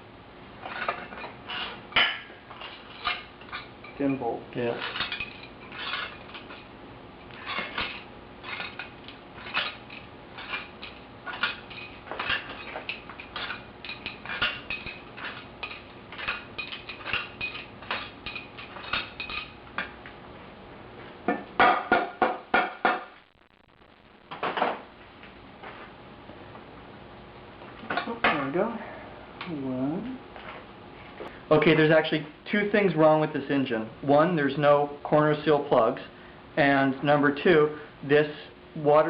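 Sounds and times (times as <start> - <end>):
metal tools and bolts clinking: 0.6 - 6.7, 7.4 - 19.9.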